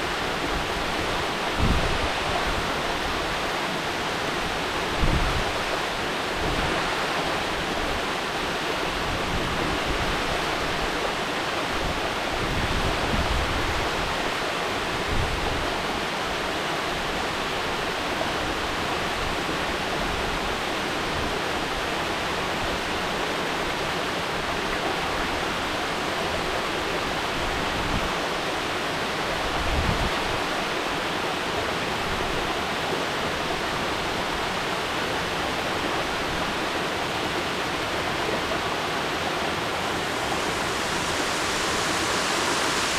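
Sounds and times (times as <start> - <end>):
waterfall rushing: 0.0 - 19.5, 32.7 - 42.9.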